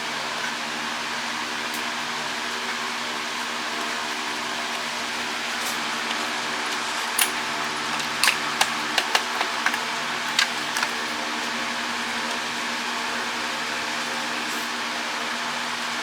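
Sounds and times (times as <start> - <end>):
steady background hum: 6.8 - 16.0
tools and plastic parts clicking: 8.0 - 11.2.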